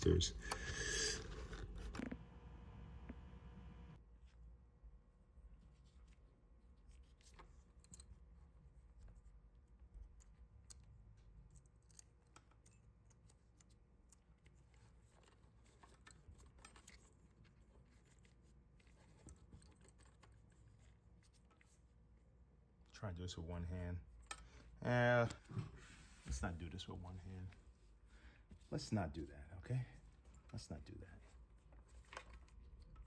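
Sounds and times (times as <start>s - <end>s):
small parts clicking and scratching: 5.7s - 22.0s, 30.0s - 33.0s.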